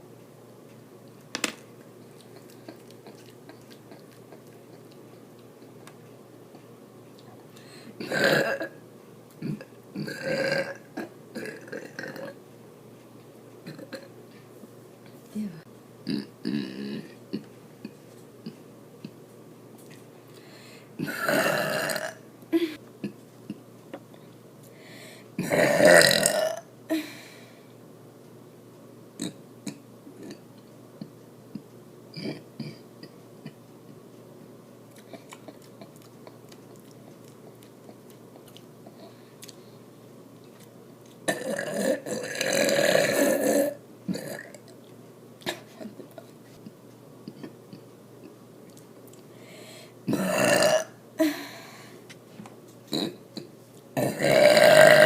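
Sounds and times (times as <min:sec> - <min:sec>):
woman belching: 0:08.0 - 0:08.8, 0:09.4 - 0:12.4, 0:16.0 - 0:17.4, 0:21.0 - 0:22.2, 0:25.4 - 0:26.7, 0:41.3 - 0:44.6, 0:50.1 - 0:51.0, 0:54.0 - 0:55.0.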